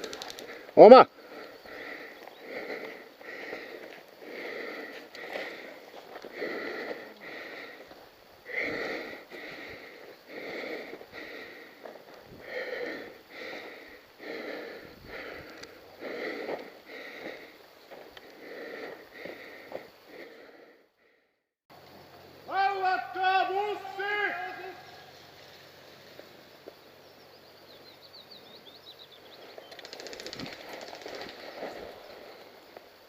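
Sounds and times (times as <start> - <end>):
person breathing hard: 0.0 - 21.5.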